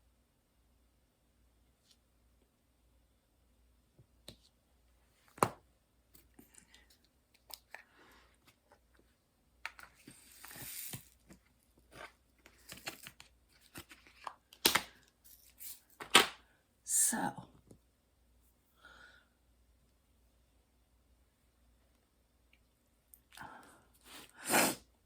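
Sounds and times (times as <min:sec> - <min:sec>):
rustling and crinkling: 0:05.1 - 0:16.2.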